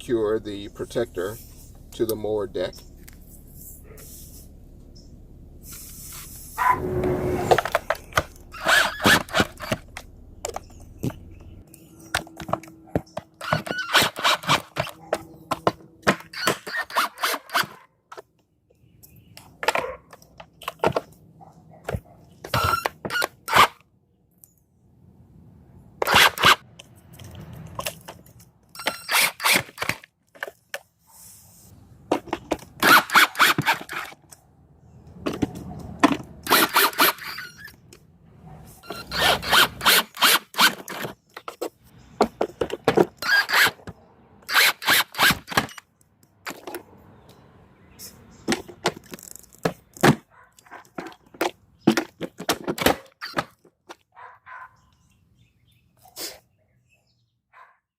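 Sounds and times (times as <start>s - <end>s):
metal tool clicks and scrapes: 35.6s - 38.0s.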